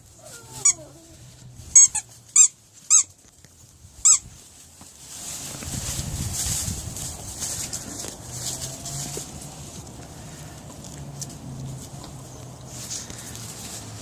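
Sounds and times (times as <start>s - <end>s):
rustling and scuffling: 0.0s - 14.0s
squeaky dog toy squeaks: 0.4s - 0.9s, 1.7s - 3.2s, 4.0s - 4.3s.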